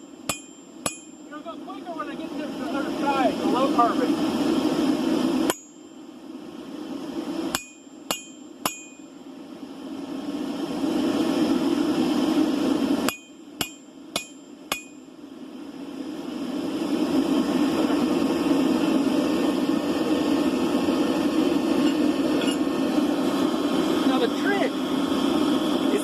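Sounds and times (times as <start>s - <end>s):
loud steady rushing noise: 0.0s - 26.0s
hammer blows on an anvil: 0.2s - 1.4s, 5.5s - 5.9s, 7.5s - 9.1s, 13.1s - 15.0s.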